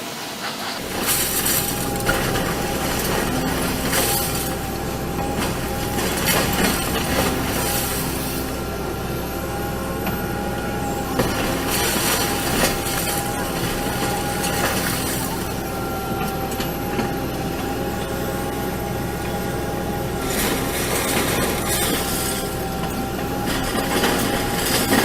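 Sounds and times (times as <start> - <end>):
heavy machinery whining: 0.1 - 25.0
harsh scraping: 0.4 - 8.6, 20.2 - 25.0.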